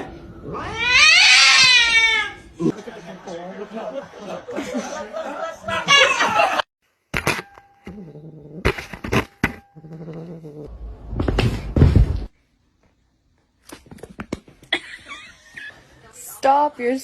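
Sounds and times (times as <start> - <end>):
cat yowling: 0.4 - 2.5.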